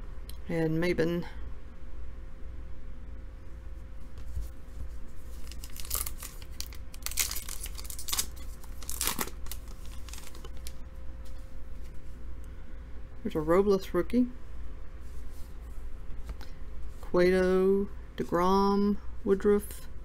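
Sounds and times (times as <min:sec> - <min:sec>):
paper packaging crinkling: 0:04.4 - 0:10.9.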